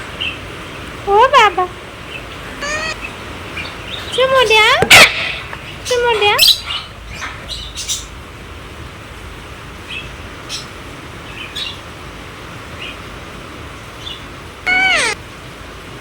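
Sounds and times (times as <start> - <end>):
parrot squawk: 2.5 - 3.9, 4.9 - 5.5, 14.7 - 15.2
parrot chirps: 2.5 - 4.2, 14.7 - 15.2.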